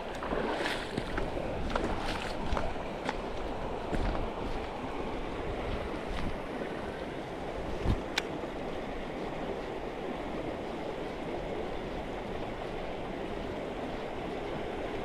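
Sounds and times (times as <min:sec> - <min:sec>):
stream water rushing: 0:00.0 - 0:15.0.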